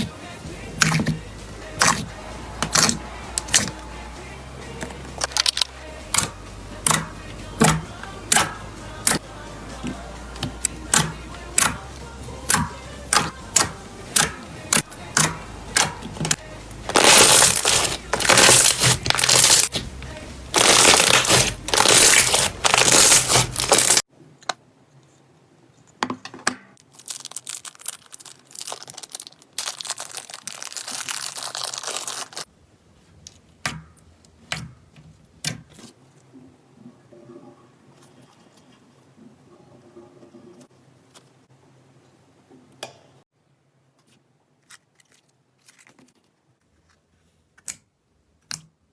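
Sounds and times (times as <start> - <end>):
slime crackling: 1.8 - 3.9, 16.8 - 19.8, 20.5 - 24.0, 26.8 - 32.5.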